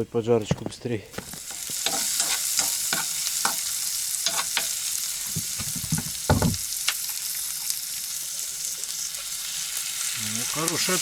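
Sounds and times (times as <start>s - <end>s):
food sizzling in a frying pan: 1.1s - 11.0s
utensil scraping a pan: 1.2s - 6.6s
dull knock: 5.4s - 6.6s.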